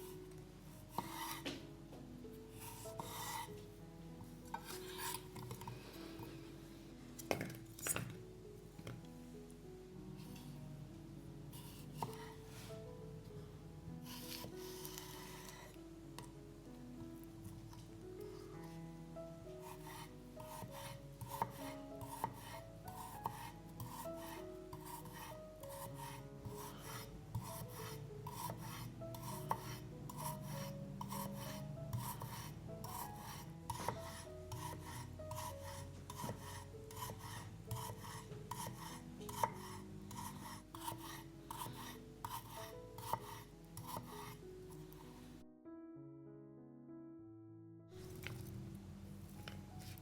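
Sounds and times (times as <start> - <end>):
soft piano music: 0.0 - 50.0
food rasping on a grater: 19.6 - 44.4.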